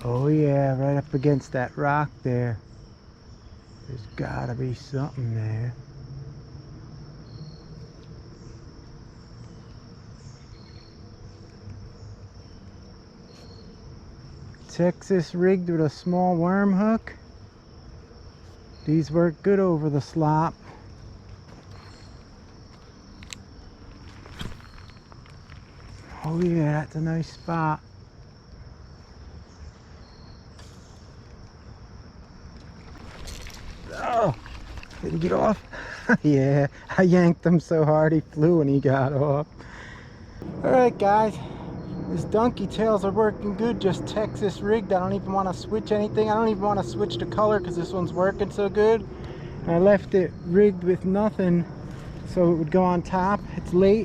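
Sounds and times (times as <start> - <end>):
crickets trilling: 0.0 - 54.0
high insect drone: 0.0 - 54.0
low background rumble: 39.5 - 54.0.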